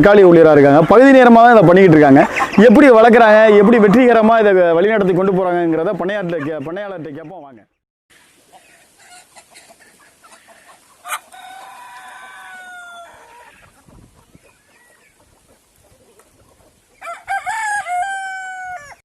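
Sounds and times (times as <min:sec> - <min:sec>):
faint hen clucking: 0:08.5 - 0:19.0
rooster crowing: 0:11.1 - 0:13.6, 0:17.0 - 0:19.0.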